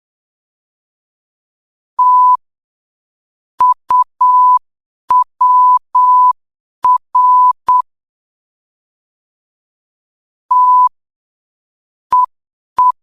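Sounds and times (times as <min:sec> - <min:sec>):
morse code beeps: 0:02.0 - 0:02.4, 0:03.6 - 0:07.9, 0:10.5 - 0:10.9, 0:12.1 - 0:13.0.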